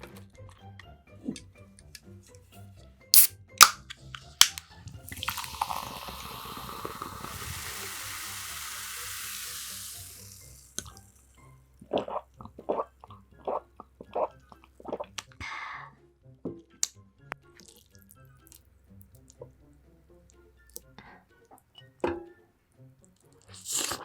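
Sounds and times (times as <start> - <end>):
water pouring into a container: 4.9 - 11.1.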